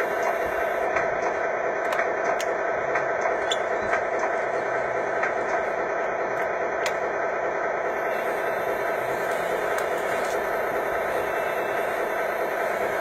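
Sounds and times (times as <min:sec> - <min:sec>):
small electric motors whining: 0:07.9 - 0:13.0.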